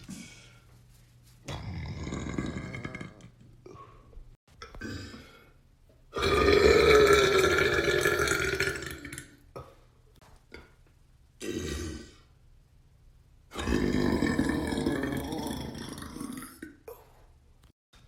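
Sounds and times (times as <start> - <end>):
man burping: 1.5 - 3.9, 4.6 - 5.4, 6.2 - 9.8, 11.4 - 12.2, 13.5 - 17.0.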